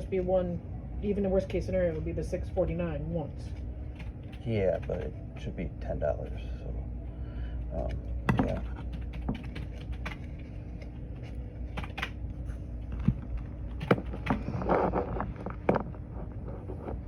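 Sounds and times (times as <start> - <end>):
low room hum: 0.0 - 17.0
computer keyboard typing clicks: 3.9 - 5.5, 7.6 - 10.3, 11.7 - 12.2, 13.7 - 14.5.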